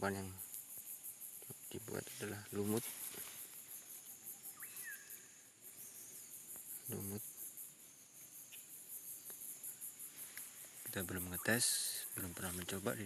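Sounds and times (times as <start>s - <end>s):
insects chirping: 0.0s - 13.0s.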